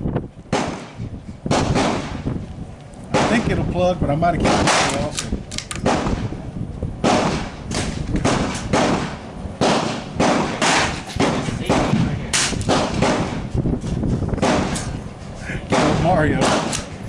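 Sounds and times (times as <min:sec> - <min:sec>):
gunshots with echo: 0:00.5 - 0:02.3, 0:03.1 - 0:03.6, 0:04.4 - 0:05.1, 0:05.8 - 0:06.3, 0:07.0 - 0:13.5, 0:14.4 - 0:14.9, 0:15.7 - 0:16.9.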